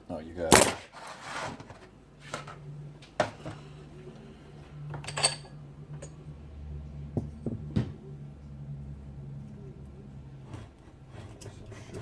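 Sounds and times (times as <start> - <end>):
steel parts clinking on metal: 0.5 - 1.0, 5.0 - 6.2.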